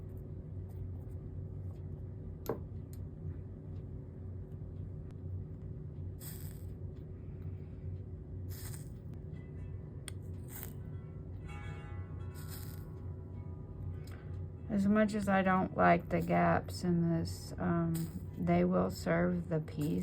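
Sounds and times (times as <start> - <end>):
steady low hum: 0.0 - 20.0
solder hissing: 8.5 - 9.0, 12.4 - 12.9.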